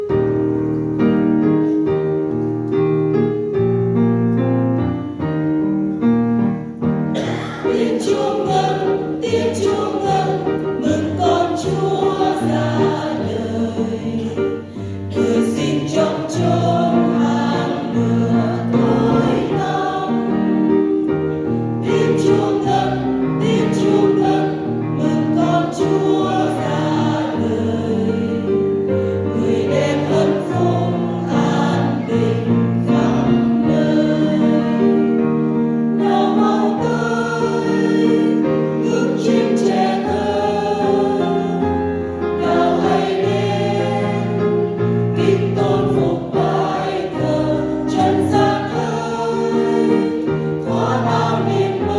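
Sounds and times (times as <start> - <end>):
choir singing a hymn: 7.0 - 51.9.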